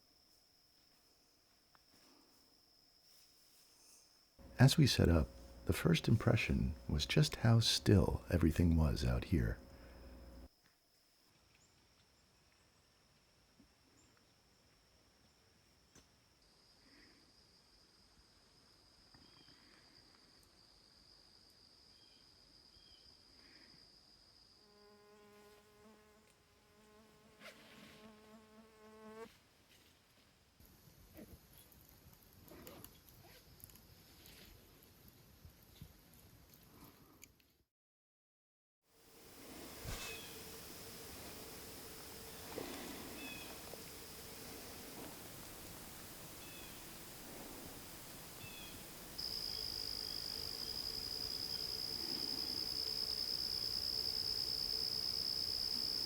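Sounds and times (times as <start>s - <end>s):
high insect trill: 0.0s - 10.5s, 39.1s - 56.0s
faint high hum: 4.4s - 10.5s, 39.1s - 56.0s
flying insect buzzing: 24.7s - 29.3s, 39.1s - 56.0s.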